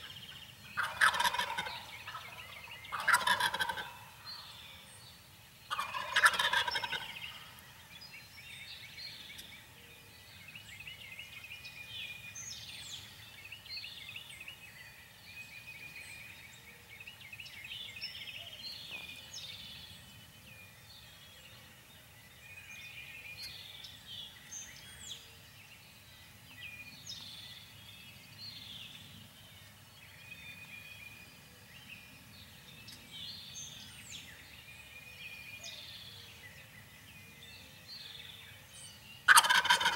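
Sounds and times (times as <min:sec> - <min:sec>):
songbirds chirping: 0:00.0 - 0:39.9
turkey gobbling: 0:00.8 - 0:04.2, 0:05.7 - 0:07.4, 0:39.3 - 0:39.9.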